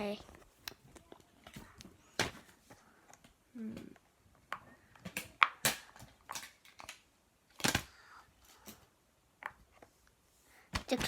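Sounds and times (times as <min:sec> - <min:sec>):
fidget toys clicking and rustling: 0:00.0 - 0:09.9.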